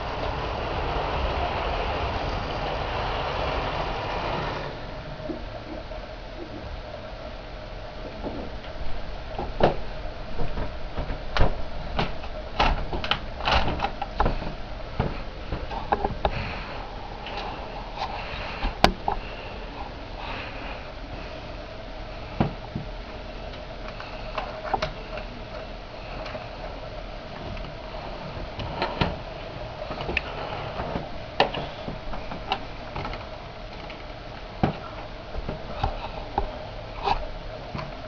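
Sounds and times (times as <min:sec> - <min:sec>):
wheels clicking on track: 0:00.0 - 0:04.9
electric motor hum: 0:00.0 - 0:38.0.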